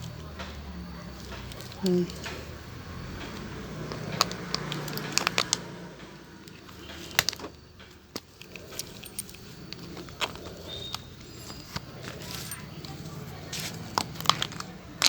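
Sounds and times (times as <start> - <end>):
sharp clicks and metallic rattles: 0.0 - 15.0.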